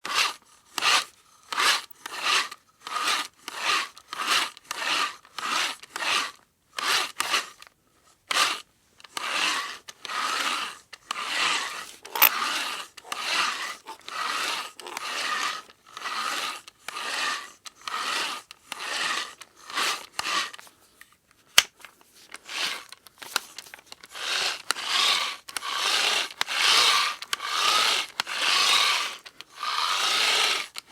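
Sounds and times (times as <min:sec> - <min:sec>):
manual drill grinding: 0:00.0 - 0:20.7, 0:22.3 - 0:30.9.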